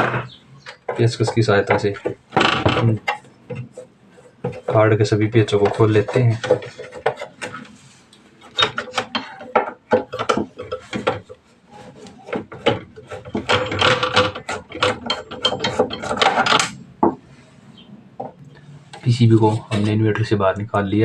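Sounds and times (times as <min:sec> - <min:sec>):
metal scraping: 0:00.0 - 0:16.8.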